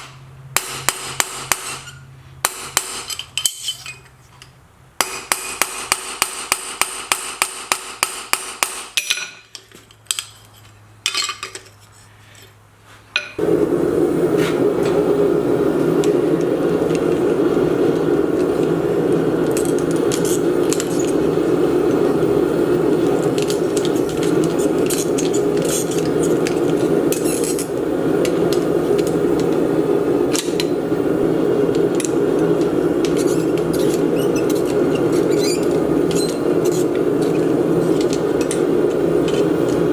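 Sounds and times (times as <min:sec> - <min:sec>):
hammer striking steel pins: 0:00.6 - 0:04.0, 0:05.0 - 0:09.5
loud rushing noise: 0:13.4 - 0:39.9.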